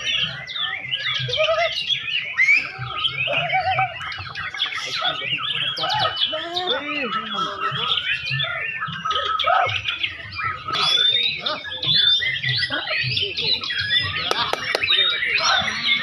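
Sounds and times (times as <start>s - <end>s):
songbird singing whistles and chirps: 0.0s - 16.0s
sharp clicks: 14.3s - 15.0s.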